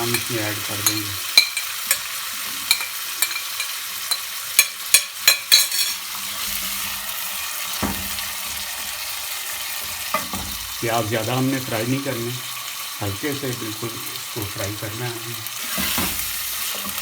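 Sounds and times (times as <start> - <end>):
spoon scraping against pot: 0.0 - 6.6
onions sizzling in hot oil: 0.0 - 17.0.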